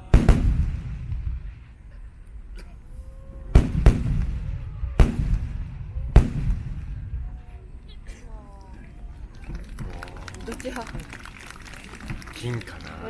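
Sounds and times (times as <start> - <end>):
low rolling rumble: 0.0 - 13.0.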